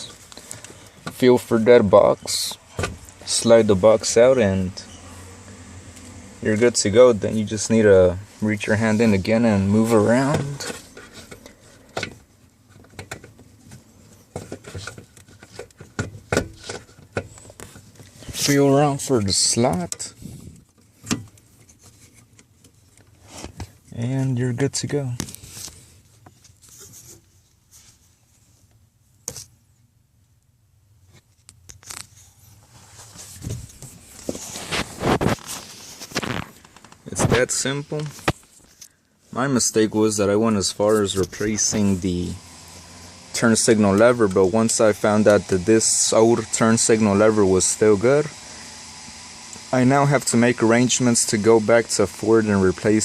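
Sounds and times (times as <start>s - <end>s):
rustling scraping and knocks: 20.1s - 23.8s, 25.3s - 28.5s, 31.1s - 39.0s.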